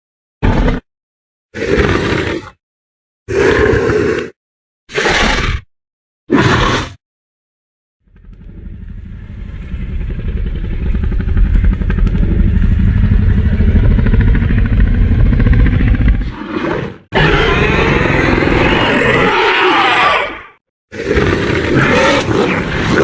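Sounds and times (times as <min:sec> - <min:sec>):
creature roar: 0:01.6 - 0:02.6, 0:03.3 - 0:05.7, 0:06.3 - 0:07.0, 0:16.1 - 0:23.0.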